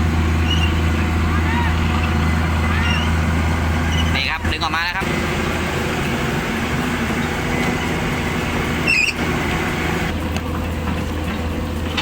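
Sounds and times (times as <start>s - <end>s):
heavy diesel engines running: 0.0s - 12.0s.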